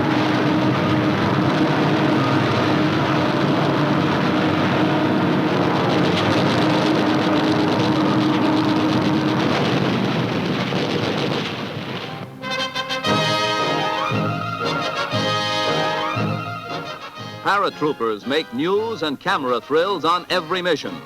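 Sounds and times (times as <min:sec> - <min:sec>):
held drone: 0:00.0 - 0:17.9
aircraft engine roar: 0:00.0 - 0:21.0
orchestral music: 0:12.0 - 0:21.0.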